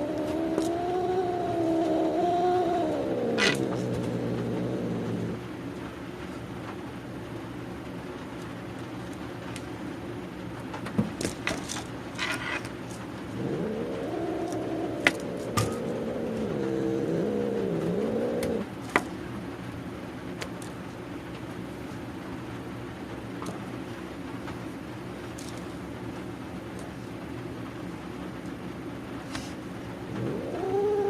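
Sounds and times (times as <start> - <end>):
cat growling yowl: 0.0 - 5.4, 13.3 - 18.7, 30.0 - 31.0.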